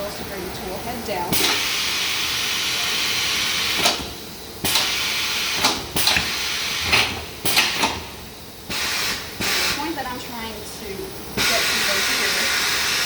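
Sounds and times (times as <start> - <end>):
pneumatic control clicks: 1.3 - 1.8, 3.7 - 9.8
compressed air hissing: 1.3 - 10.2, 11.3 - 13.0.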